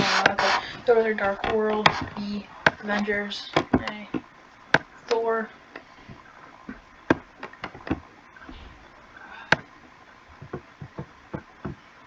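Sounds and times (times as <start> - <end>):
sharp clicks and taps: 10.4 - 11.8.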